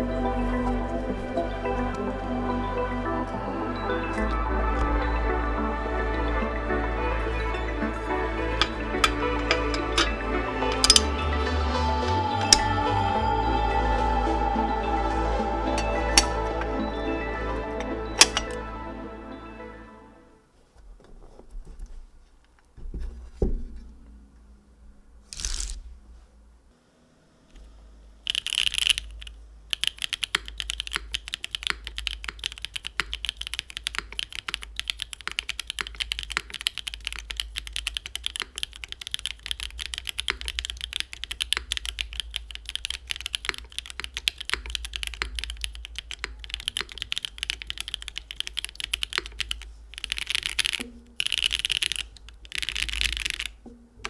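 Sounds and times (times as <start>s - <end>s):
fast mechanical keyboard typing: 8.4s - 11.1s, 12.4s - 12.8s, 18.2s - 18.6s, 28.3s - 53.6s.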